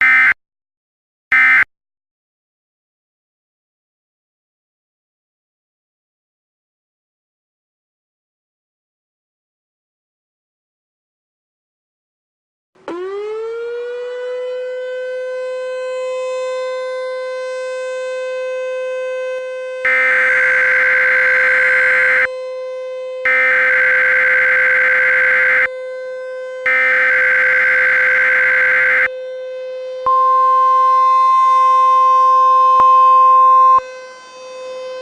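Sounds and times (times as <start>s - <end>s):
siren wailing: 0.0s - 0.4s, 1.3s - 1.6s, 12.9s - 35.0s
alert data bursts: 19.9s - 22.3s, 23.3s - 25.7s, 26.7s - 29.1s
weather radio attention tone: 19.9s - 22.3s, 23.3s - 25.7s, 26.7s - 29.1s, 30.1s - 33.8s.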